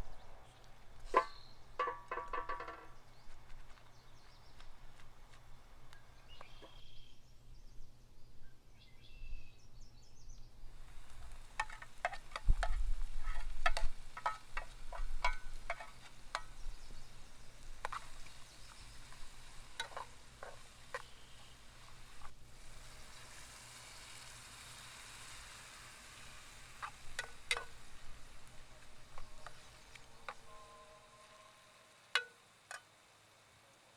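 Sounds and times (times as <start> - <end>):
food sizzling in a pan: 10.7 - 33.9
utensils clicking and knocking: 26.8 - 27.8.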